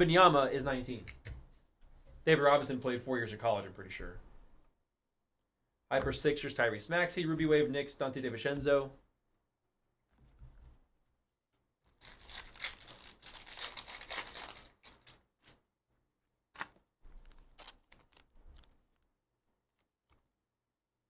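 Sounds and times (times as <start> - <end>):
wrapper being torn open: 12.0 - 15.2, 16.6 - 18.8
cards clicking and rustling: 12.0 - 15.6, 16.6 - 18.8.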